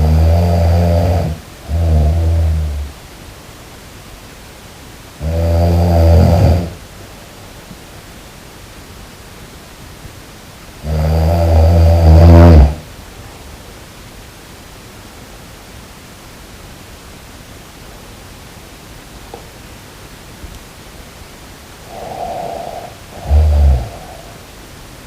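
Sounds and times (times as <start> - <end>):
person snoring: 0.0 - 2.9, 5.2 - 6.8, 10.8 - 12.8, 21.8 - 24.5
steady background hiss: 0.0 - 25.0.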